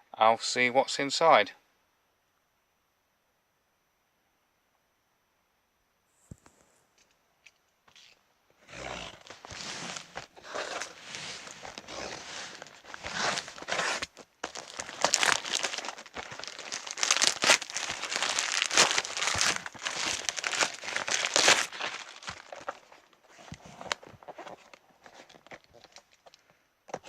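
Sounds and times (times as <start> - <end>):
packaging crinkling and tearing: 7.9 - 27.0.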